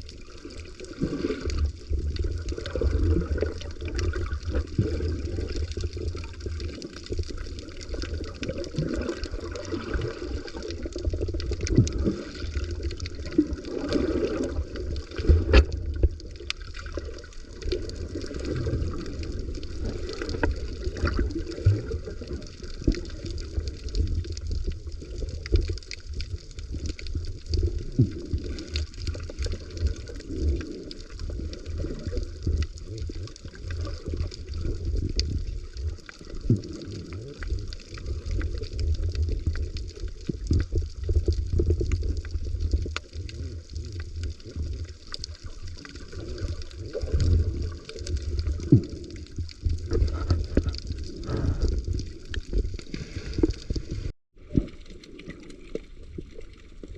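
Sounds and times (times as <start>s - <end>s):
water sloshing and gurgling: 0.0s - 56.9s
sharp clicks and pops: 14.8s - 56.9s.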